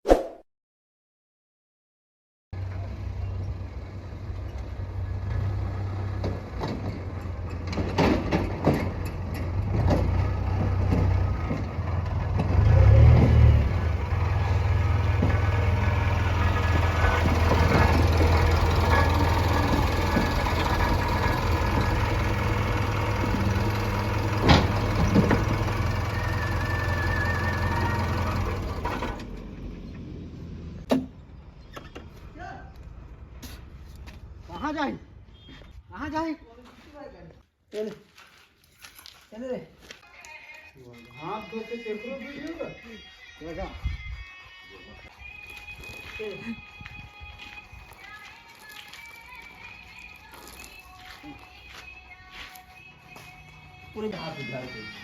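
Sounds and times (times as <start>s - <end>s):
diesel engine running: 2.6s - 30.9s.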